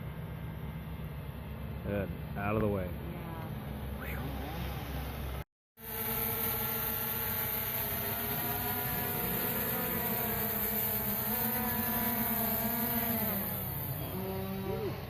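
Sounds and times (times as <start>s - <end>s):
drone propellers whining: 3.2s - 15.0s.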